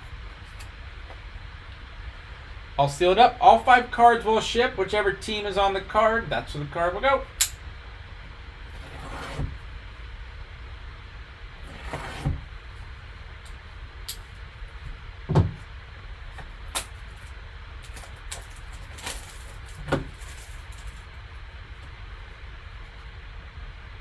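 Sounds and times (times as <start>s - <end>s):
low steady hum: 0.0s - 24.0s
dull thumps of box: 15.3s - 15.7s
packaging rustle: 16.8s - 21.2s.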